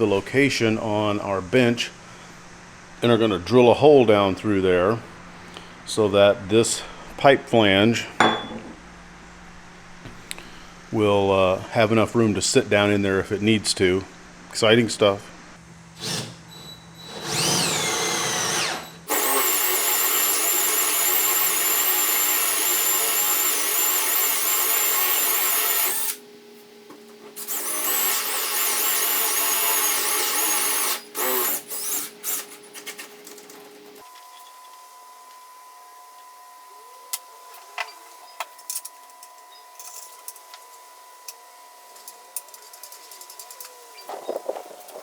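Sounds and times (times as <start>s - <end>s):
power drill boring wood: 16.0s - 26.2s, 27.4s - 32.6s.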